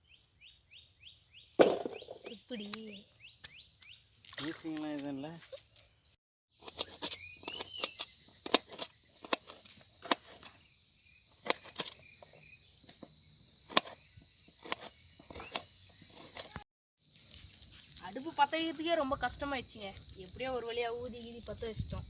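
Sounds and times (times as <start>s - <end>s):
crickets chirring: 6.5s - 22.0s.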